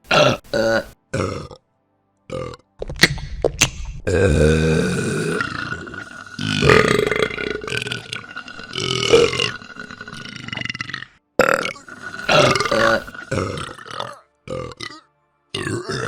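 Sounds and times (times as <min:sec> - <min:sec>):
loud drawn-out burps: 0:00.0 - 0:01.6, 0:02.3 - 0:02.7, 0:04.0 - 0:16.0.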